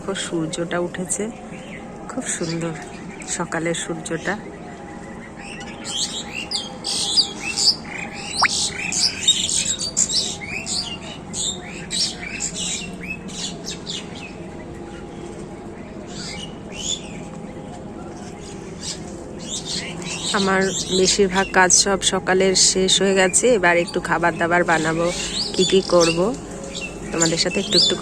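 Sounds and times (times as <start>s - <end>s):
flock of birds chirping: 0.1s - 28.0s.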